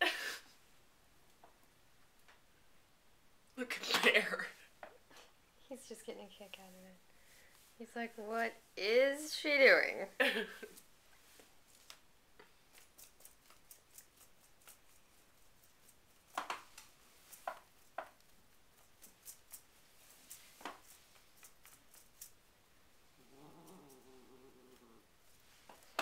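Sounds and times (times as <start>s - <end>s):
cat moaning: 23.2s - 25.1s.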